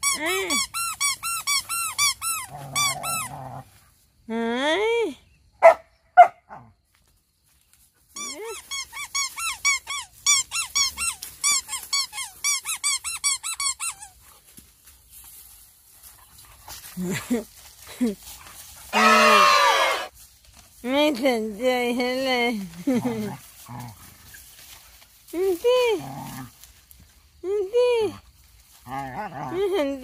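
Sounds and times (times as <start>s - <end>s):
dogs whining and squeaking: 0.0s - 3.3s, 8.2s - 14.2s
dog barking: 5.6s - 6.6s.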